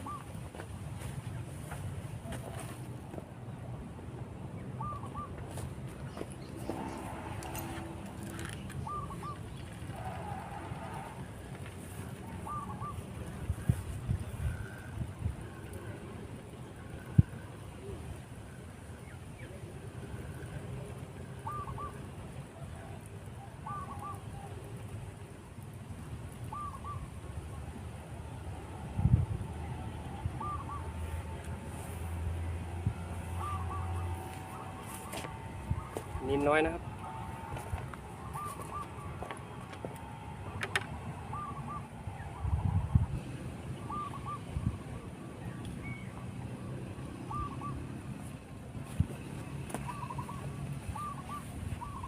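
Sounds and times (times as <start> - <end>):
bird calling: 0.0 - 0.5, 4.8 - 11.3, 12.3 - 15.0, 21.4 - 24.7, 26.4 - 27.2, 30.1 - 31.4, 33.0 - 43.0, 43.8 - 46.2, 46.9 - 47.9, 49.6 - 52.0
steady low rumble: 27.1 - 52.0.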